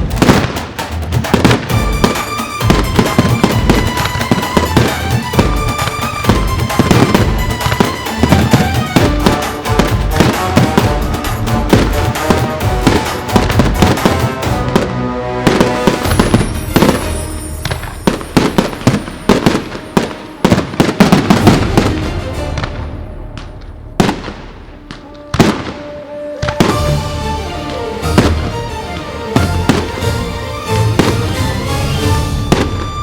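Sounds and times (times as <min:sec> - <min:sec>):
fireworks bangs and crackles: 0:00.0 - 0:33.0
music: 0:00.0 - 0:33.0.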